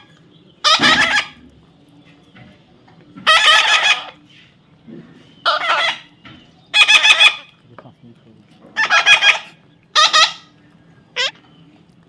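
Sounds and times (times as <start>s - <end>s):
parrot squawking: 0.6s - 1.4s, 3.2s - 4.2s, 5.4s - 6.1s, 6.7s - 7.5s, 8.8s - 10.6s, 11.2s - 11.4s.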